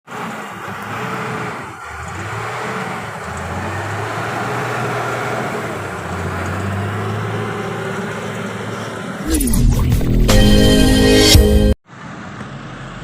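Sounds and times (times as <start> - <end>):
road noise: 0.0 - 13.0
vehicle engine running: 0.1 - 9.3.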